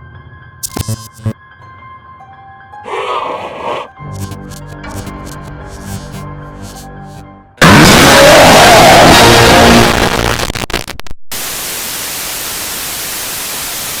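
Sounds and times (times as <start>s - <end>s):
crackles and clicks: 0.6s - 1.4s, 4.1s - 6.9s, 7.6s - 11.4s
loud burst of harsh noise: 7.6s - 14.0s
steady static hiss: 10.0s - 14.0s.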